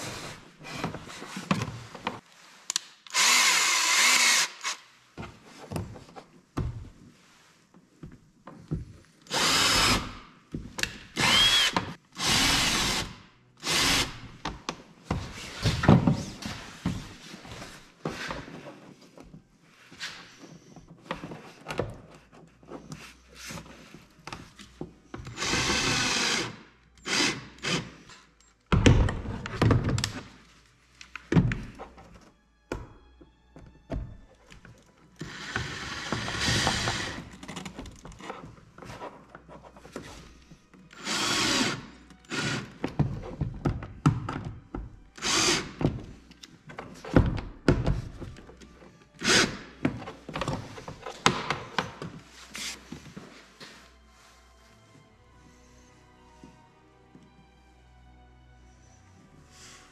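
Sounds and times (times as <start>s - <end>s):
power drill running: 3.1s - 4.8s, 9.3s - 10.2s, 11.2s - 14.2s, 25.4s - 27.8s, 41.0s - 42.7s.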